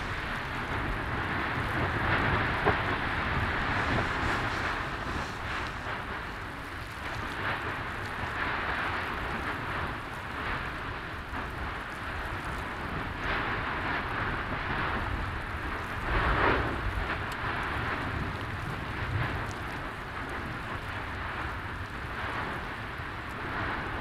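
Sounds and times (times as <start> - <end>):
low rumble: 0.0 - 8.0
lava fountain rushing: 0.0 - 24.0.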